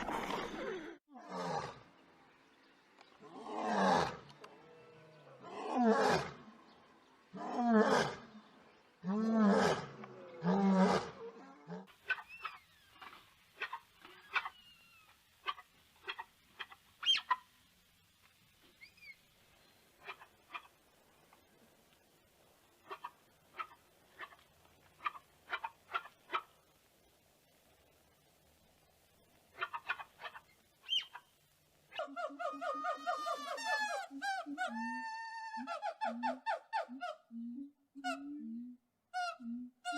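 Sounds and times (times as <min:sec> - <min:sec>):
small birds chirping: 0:11.9 - 0:17.7, 0:18.4 - 0:21.5, 0:29.1 - 0:31.6.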